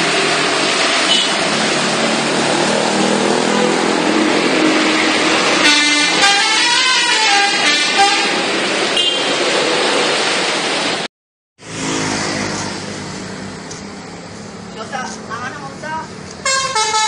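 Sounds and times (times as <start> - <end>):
bus engine running: 0.0 - 17.0
road noise: 0.0 - 17.0
musical air horn tune: 5.6 - 8.4, 16.4 - 17.0.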